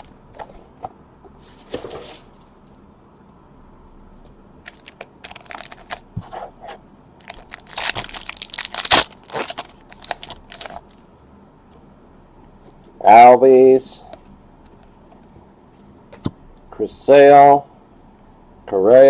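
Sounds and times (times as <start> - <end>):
card wrapper tearing and crinkling: 4.7 - 6.0, 7.2 - 11.0.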